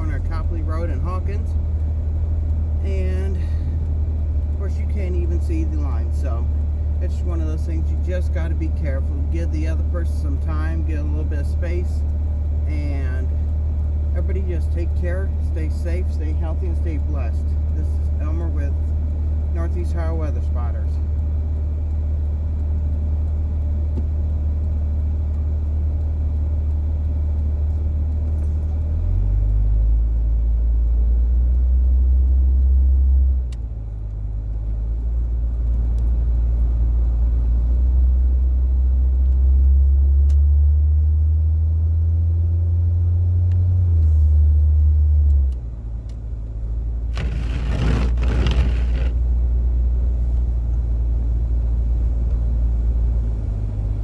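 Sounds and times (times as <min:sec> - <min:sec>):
vehicle engine and road rumble: 0:00.0 - 0:54.0.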